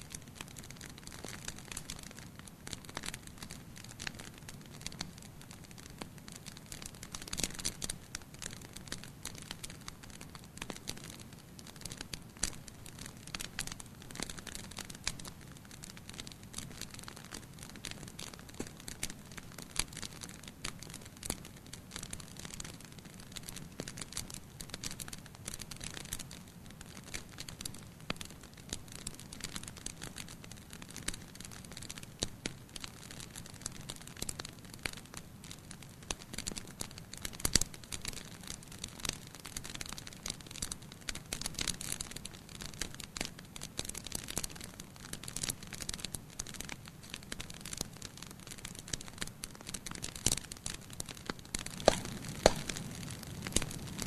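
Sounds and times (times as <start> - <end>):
wood fire crackling and popping: 0.0 - 54.0.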